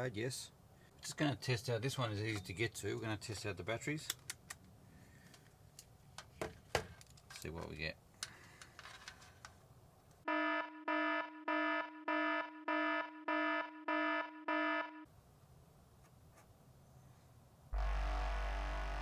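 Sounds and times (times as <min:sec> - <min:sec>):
electronic alarm buzzer beeping: 0:10.3 - 0:15.0.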